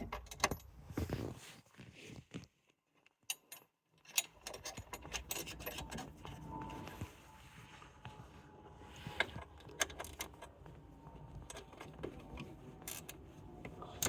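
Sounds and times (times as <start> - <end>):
spanner and metal fittings clinking: 3.3 - 6.2.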